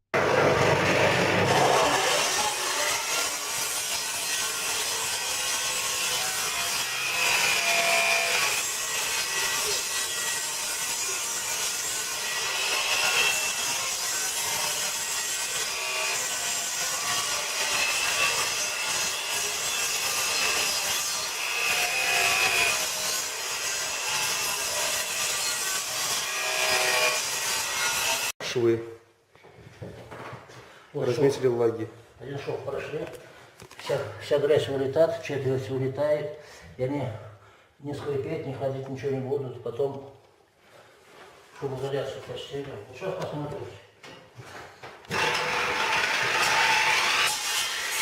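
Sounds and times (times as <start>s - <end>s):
electric saw cutting wood: 0.2s - 28.4s, 45.0s - 48.0s.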